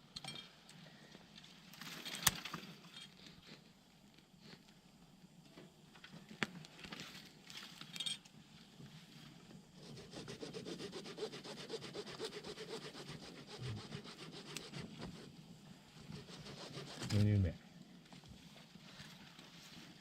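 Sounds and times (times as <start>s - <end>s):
handsaw cutting wood: 9.8s - 15.3s, 16.1s - 17.3s.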